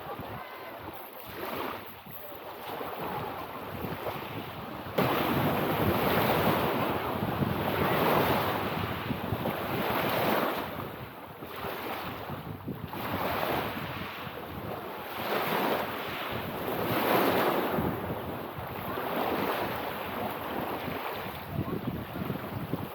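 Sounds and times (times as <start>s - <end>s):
lake waves washing on shore: 0.0s - 22.9s
wind on microphone: 0.0s - 22.9s.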